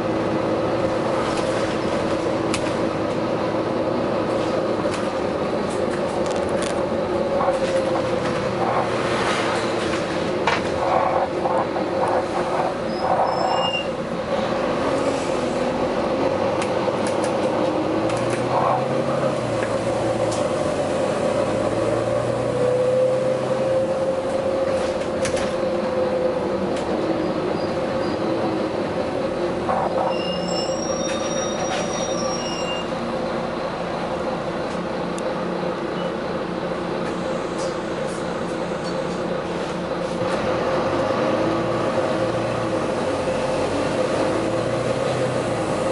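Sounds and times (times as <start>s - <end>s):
train rumbling on rails: 0.0s - 45.9s
high-pitched wheel squeals: 12.7s - 14.0s, 29.8s - 33.0s.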